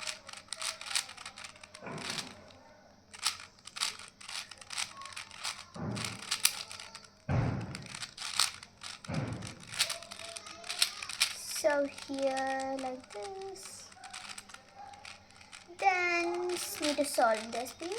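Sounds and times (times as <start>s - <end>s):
cube handling thuds: 0.0s - 17.9s
puzzle cube layers clicking: 0.0s - 17.9s.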